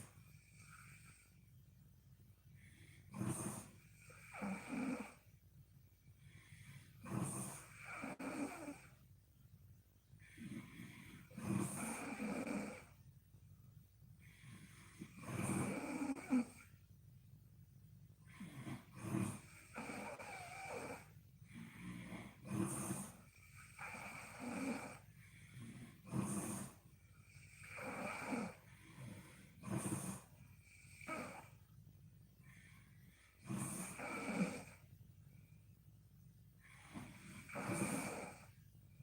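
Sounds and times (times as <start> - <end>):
soft breaths: 0.0 - 39.0
woman snoring: 2.7 - 5.2, 6.4 - 9.0, 10.2 - 13.0, 14.2 - 16.7, 18.3 - 31.5, 33.2 - 34.8, 36.6 - 38.6.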